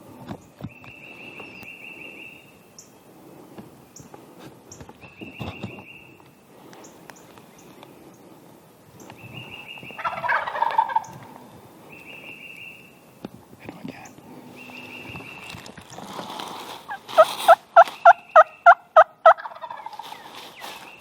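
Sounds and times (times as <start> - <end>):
turkey gobbling: 10.0 - 11.4, 16.9 - 20.2
faint bird chirps: 11.9 - 13.0, 14.0 - 15.6
songbird trilling: 17.8 - 18.9.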